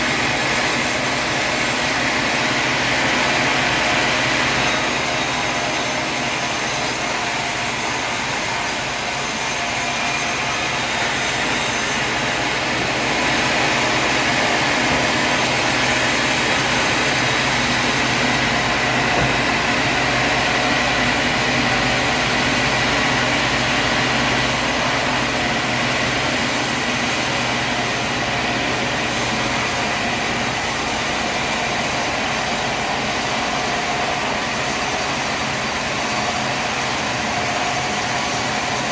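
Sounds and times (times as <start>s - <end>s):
high machine whine: 0.0s - 38.9s
sawmill machinery running: 0.0s - 38.9s.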